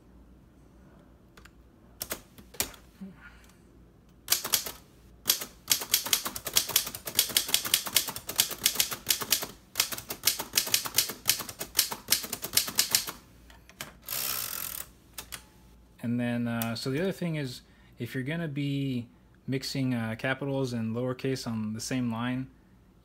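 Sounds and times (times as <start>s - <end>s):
typewriter typing: 2.0s - 2.8s, 4.3s - 13.2s
typewriter carriage return rasp: 4.3s - 13.2s.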